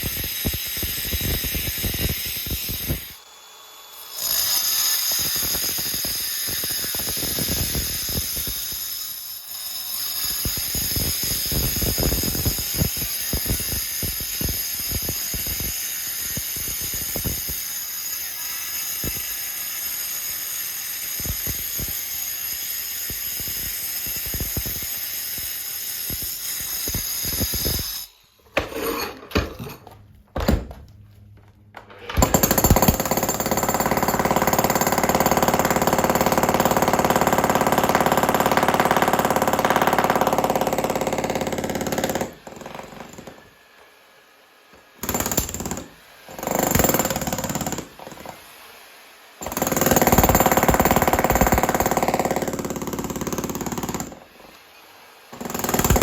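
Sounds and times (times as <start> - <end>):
demolition hammer chipping concrete: 32.2 - 43.4, 45.0 - 48.3, 49.4 - 54.2, 55.3 - 56.0.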